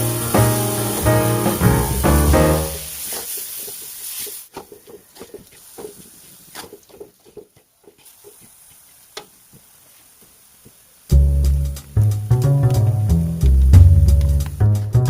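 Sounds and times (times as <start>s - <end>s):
faint hiss: 0.0s - 15.0s.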